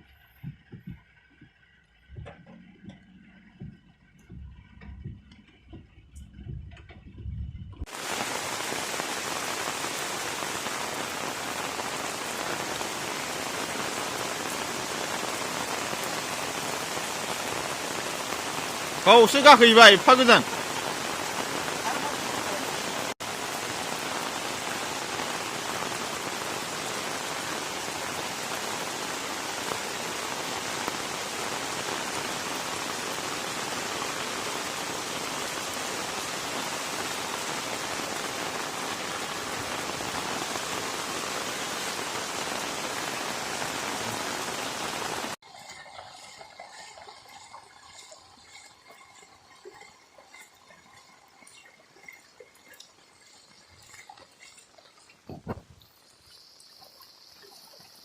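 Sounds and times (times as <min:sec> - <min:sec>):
steady rain hiss: 0:07.8 - 0:45.4, 0:52.9 - 0:58.0.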